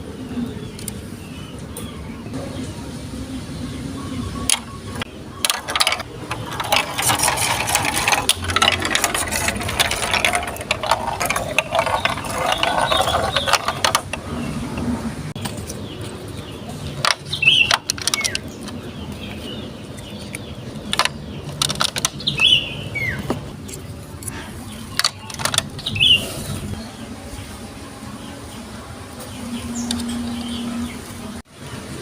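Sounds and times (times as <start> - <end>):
marbles rolling on plastic track: 5.4 - 14.2, 21.0 - 22.2, 25.0 - 25.8
marbles clacking against bricks: 5.4 - 15.7, 16.8 - 18.8, 20.0 - 22.2, 24.8 - 25.9.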